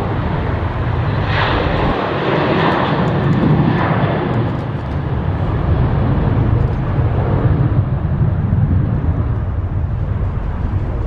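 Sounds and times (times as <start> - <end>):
jet engines rumbling: 0.0 - 11.0.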